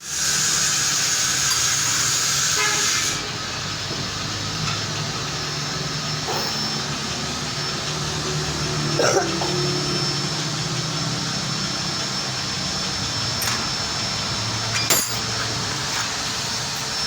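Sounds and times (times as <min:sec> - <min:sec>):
high-pitched brake squeal: 0:00.1 - 0:08.8, 0:14.7 - 0:17.0.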